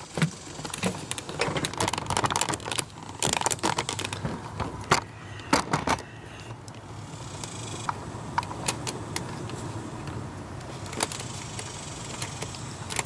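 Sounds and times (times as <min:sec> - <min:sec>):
plastic connectors clicking apart: 0:00.7 - 0:04.2.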